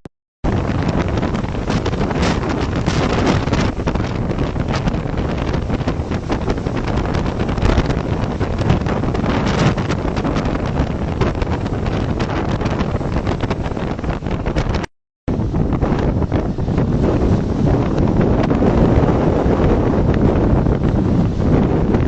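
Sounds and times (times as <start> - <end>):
rough sea surf: 0.4 - 22.0
wind buffeting microphone: 0.4 - 22.0.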